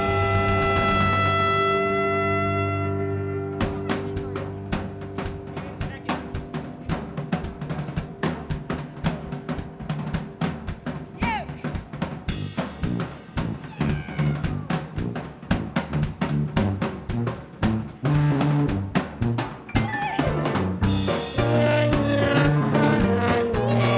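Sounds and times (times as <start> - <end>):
bass line: 0.0 - 11.6, 12.3 - 23.9
drum kit beat: 0.0 - 23.9
lead instrument sliding notes: 19.8 - 23.9.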